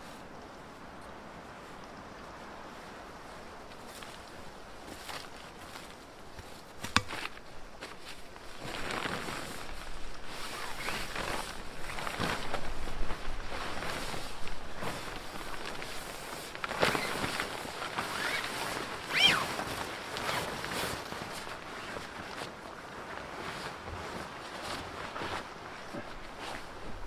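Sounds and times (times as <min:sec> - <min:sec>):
tarp fabric rustling: 0:02.4 - 0:27.0
footsteps: 0:04.9 - 0:16.2
brief high squeak: 0:19.1 - 0:19.5.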